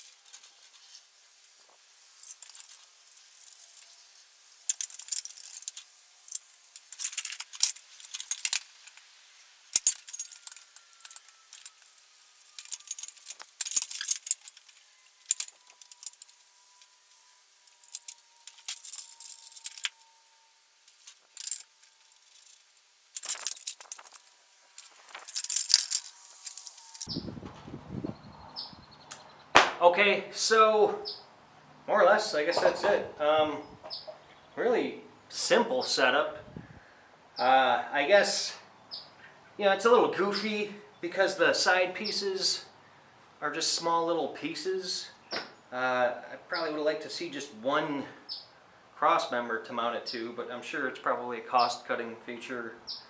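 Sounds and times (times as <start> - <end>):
metal parts clinking and rattling: 0.0 - 27.1.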